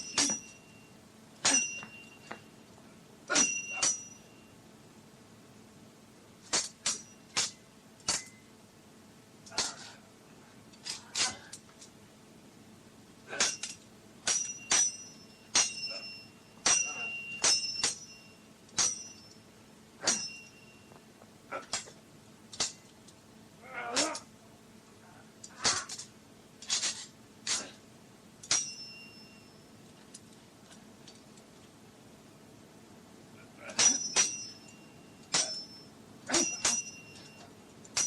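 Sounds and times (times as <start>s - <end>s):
metal sword blades clashing: 0.0s - 0.6s, 1.4s - 2.1s, 3.3s - 4.3s, 6.5s - 8.4s, 9.5s - 9.9s, 10.9s - 11.5s, 13.3s - 18.2s, 18.8s - 19.2s, 20.0s - 20.6s, 23.9s - 24.3s, 25.6s - 26.0s, 28.4s - 29.1s, 33.7s - 34.7s, 35.3s - 37.4s.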